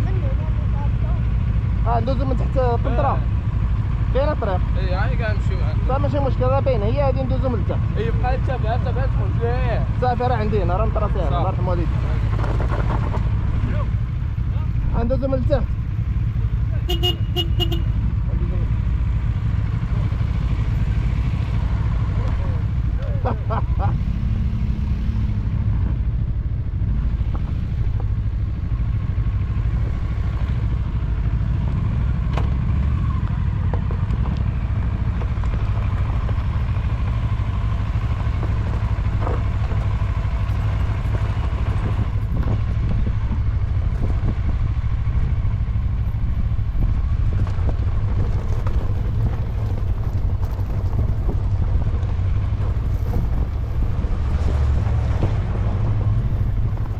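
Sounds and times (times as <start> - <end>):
motorcycle engine running: 0.0 - 56.9
knocks and clatters from terrain: 12.3 - 13.4, 47.2 - 56.9.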